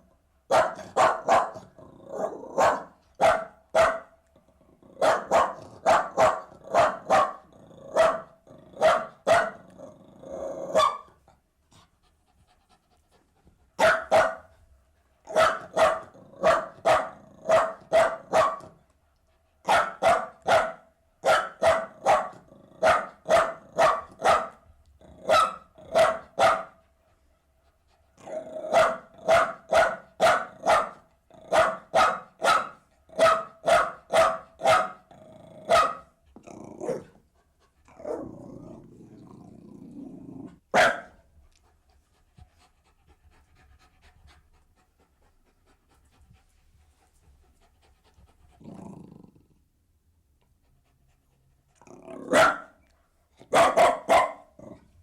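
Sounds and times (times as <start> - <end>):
dog barking: 0.5 - 4.2, 5.0 - 9.6, 10.7 - 11.1, 13.8 - 14.5, 15.3 - 18.8, 19.7 - 24.6, 25.3 - 26.8, 28.7 - 35.1, 35.7 - 36.1, 40.7 - 41.2, 52.3 - 52.8, 53.4 - 54.6.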